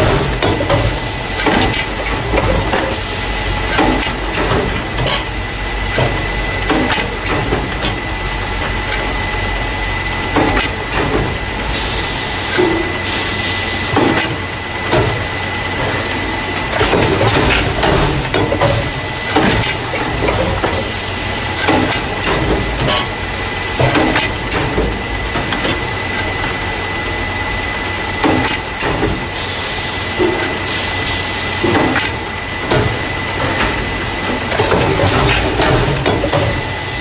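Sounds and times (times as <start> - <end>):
machine whine and hum: 0.0 - 37.0
clanks and knocks: 31.6 - 36.8.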